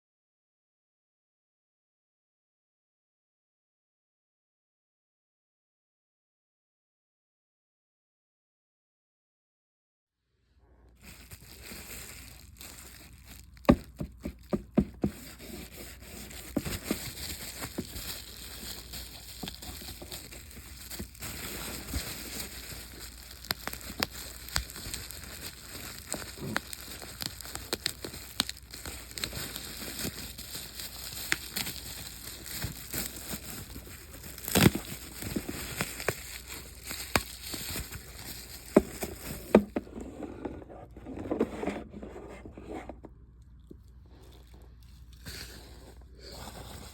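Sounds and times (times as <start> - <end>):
packaging crinkling and rustling: 10.9 - 42.7.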